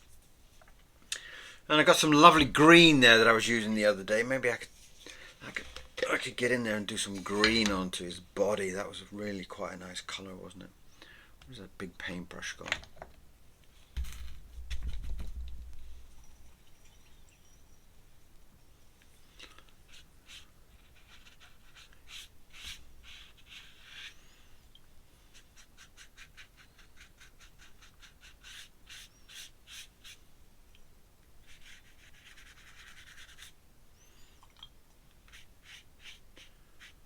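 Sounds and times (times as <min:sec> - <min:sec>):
paintbrush strokes on paper: 0:19.8 - 0:24.4, 0:25.2 - 0:30.2, 0:31.4 - 0:33.6, 0:35.2 - 0:37.0.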